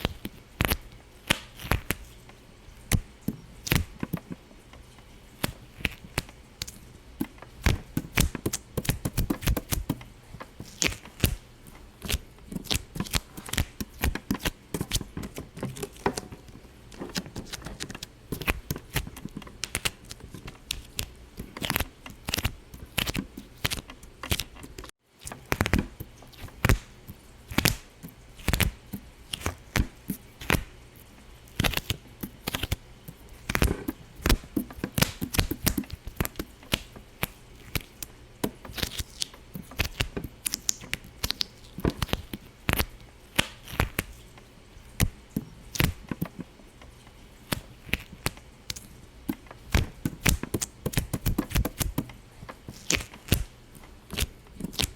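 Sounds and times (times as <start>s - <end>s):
sharp pops and crackles: 5.4s - 30.7s, 33.4s - 44.2s, 47.4s - 54.9s.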